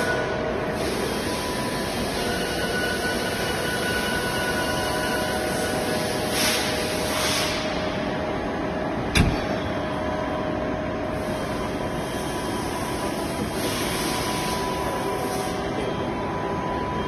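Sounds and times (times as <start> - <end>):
sharp knock: 9.1 - 9.6.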